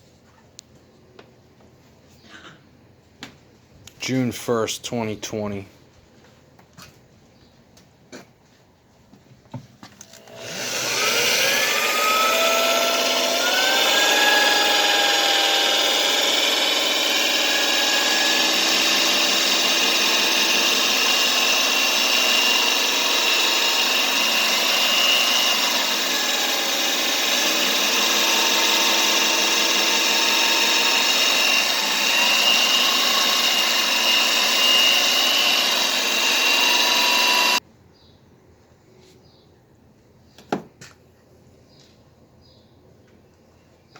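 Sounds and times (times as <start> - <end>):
electric power drill running: 10.0 - 37.6.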